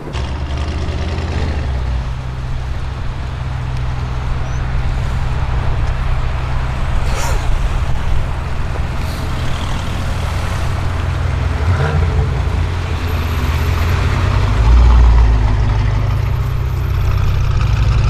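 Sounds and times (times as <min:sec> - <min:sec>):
car engine exhaust note: 0:00.0 - 0:18.0.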